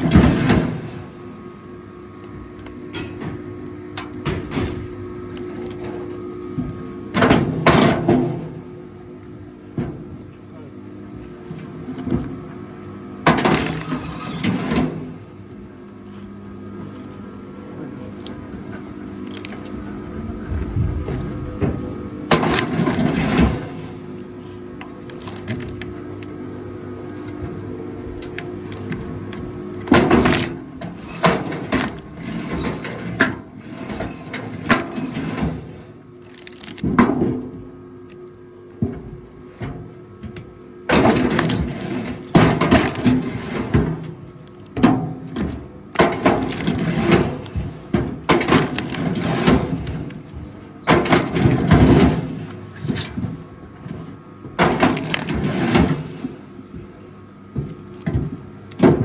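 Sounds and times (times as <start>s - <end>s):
log splitter squeaking: 13.2s - 14.4s, 30.2s - 35.3s, 48.2s - 49.9s, 52.5s - 53.2s.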